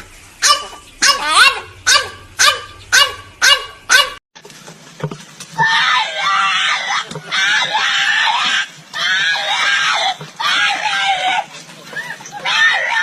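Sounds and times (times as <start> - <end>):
dog continuous cry: 0.4 - 4.2
dog yelping barks: 0.4 - 4.2.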